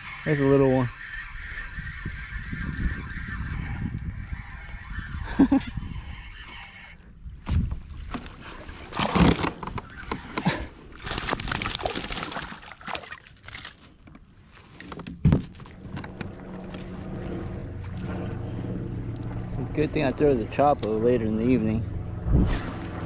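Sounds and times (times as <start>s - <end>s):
knocks and thumps on kayak: 8.9s - 10.5s, 14.8s - 17.6s
water splashing: 11.0s - 13.8s.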